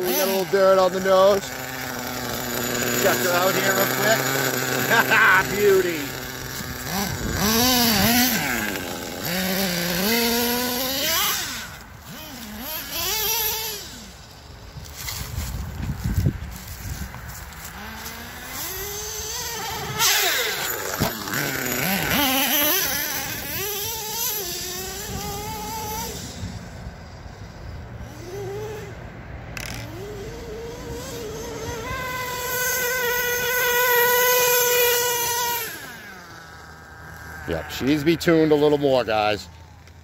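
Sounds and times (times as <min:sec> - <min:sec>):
person speaking: 0:00.0 - 0:06.3, 0:37.3 - 0:39.5
rc truck nitro engine revving: 0:00.0 - 0:40.0.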